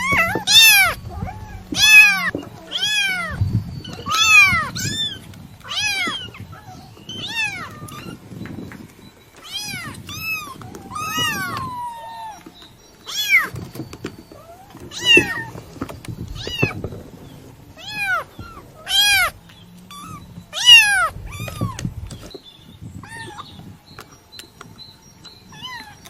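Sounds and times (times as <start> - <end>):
kitten meowing: 0.0 - 8.2, 9.4 - 12.5, 14.5 - 15.6, 17.8 - 21.9, 23.0 - 23.5.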